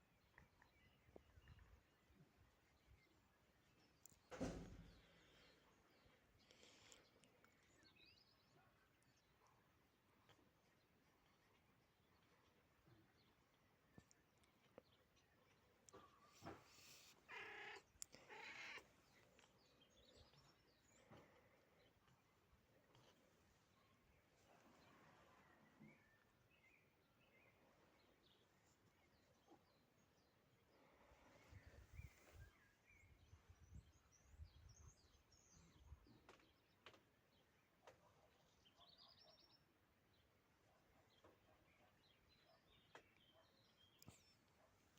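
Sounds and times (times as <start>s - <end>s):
faint birds chirping: 0.0s - 44.9s
cat meowing: 17.3s - 18.9s
faint clicks: 17.7s - 18.4s.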